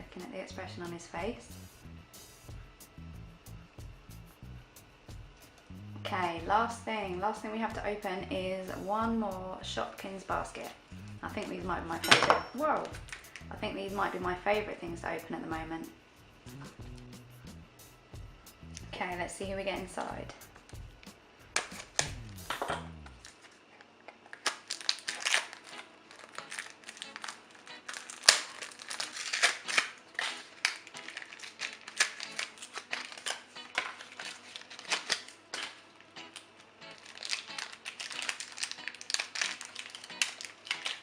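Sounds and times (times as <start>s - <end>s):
plastic packaging tearing: 12.9s - 13.5s, 21.5s - 41.0s
plastic snapping: 20.6s - 23.4s, 24.1s - 41.0s
short music snatch: 21.9s - 23.1s.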